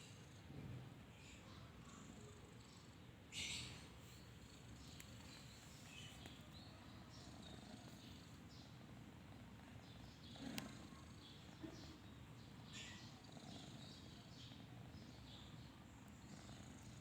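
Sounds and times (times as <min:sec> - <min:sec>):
cat snoring softly: 0:01.6 - 0:03.6, 0:07.0 - 0:12.0, 0:12.7 - 0:17.0.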